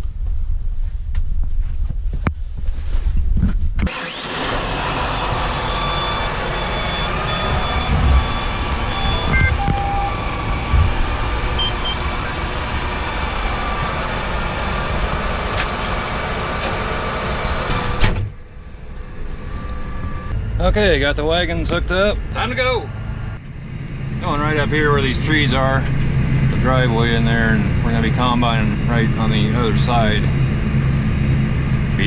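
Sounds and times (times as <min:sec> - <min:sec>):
wind rumble on microphone: 0:00.0 - 0:03.9, 0:07.2 - 0:15.7
tractor engine running: 0:03.8 - 0:32.0.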